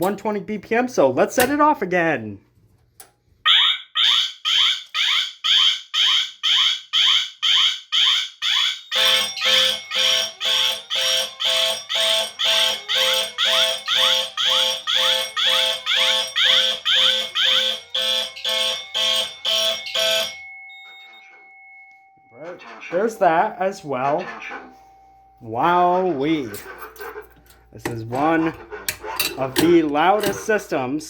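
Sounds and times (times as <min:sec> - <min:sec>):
fire alarm horns pulsing: 0:03.4 - 0:26.7.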